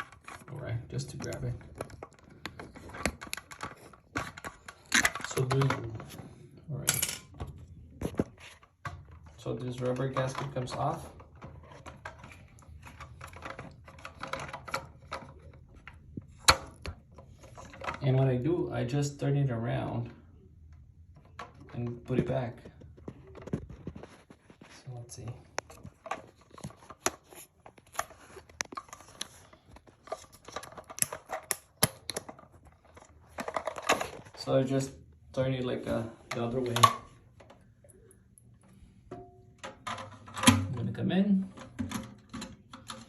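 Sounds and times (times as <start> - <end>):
plastic and rubber parts clicking: 0.0 - 6.3, 8.1 - 18.1, 20.7 - 34.4.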